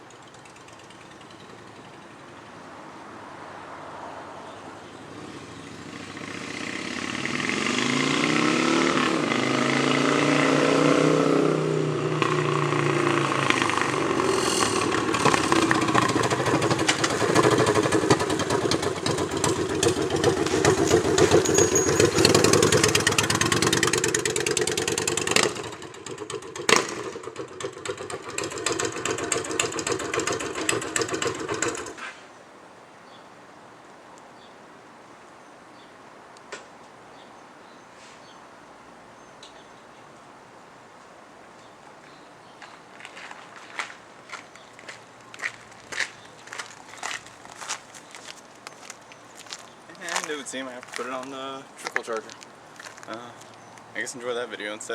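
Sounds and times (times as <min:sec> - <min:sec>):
motorcycle engine passing by: 0:00.0 - 0:32.2.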